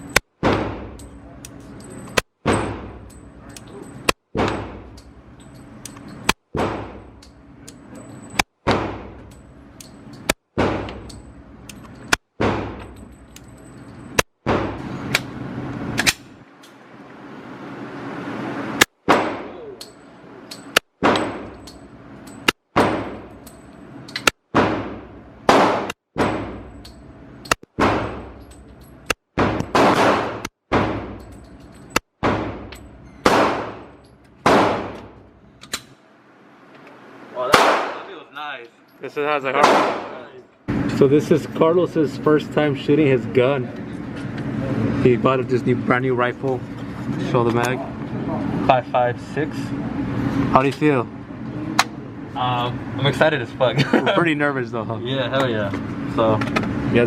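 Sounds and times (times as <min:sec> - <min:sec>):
pistol shots: 0:24.5 - 0:26.6, 0:29.4 - 0:31.1, 0:32.2 - 0:35.1, 0:37.5 - 0:38.1, 0:39.6 - 0:40.2.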